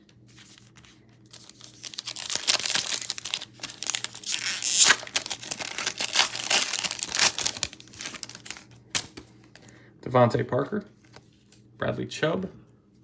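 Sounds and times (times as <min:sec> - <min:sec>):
foil wrapper crinkling and tearing: 0:00.4 - 0:09.2.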